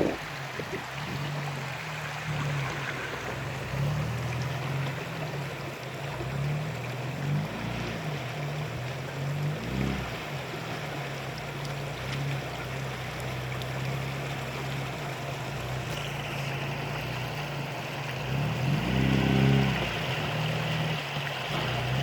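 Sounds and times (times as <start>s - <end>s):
steady rushing noise: 0.0s - 4.3s
car engine revving under load: 0.0s - 22.0s.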